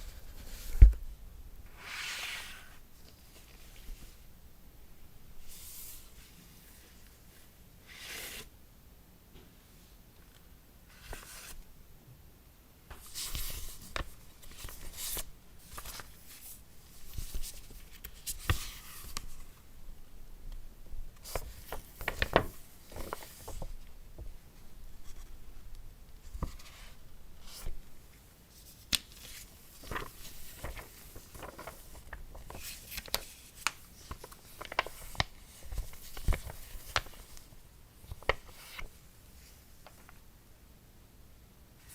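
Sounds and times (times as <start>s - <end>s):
packaging rustling: 29.2s - 37.5s.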